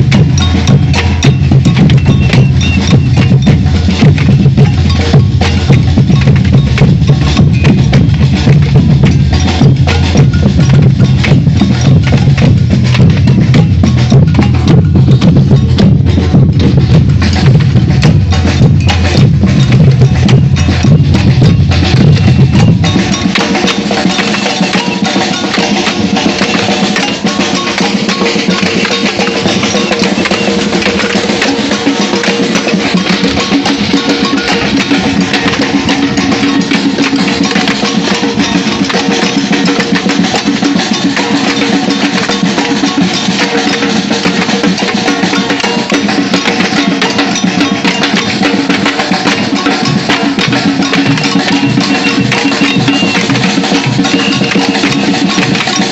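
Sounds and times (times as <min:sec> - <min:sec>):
deep bass drums: 0:00.0 - 0:23.3
samba percussion ensemble: 0:00.0 - 0:55.9.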